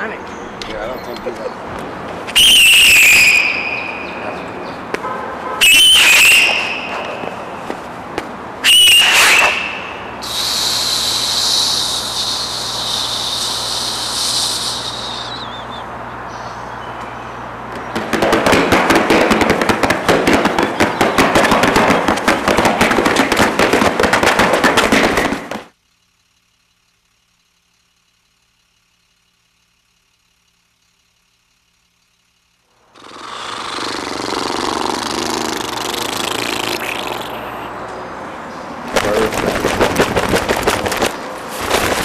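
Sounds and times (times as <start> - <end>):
rapid crackling: 17.8 - 37.7, 38.9 - 42.0
steady rushing noise: 38.8 - 42.0.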